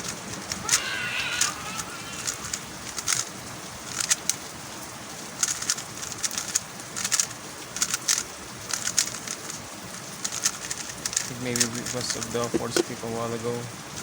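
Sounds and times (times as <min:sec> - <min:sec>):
puzzle cube plastic clicking: 0:02.2 - 0:03.3, 0:03.9 - 0:04.4, 0:05.4 - 0:13.0.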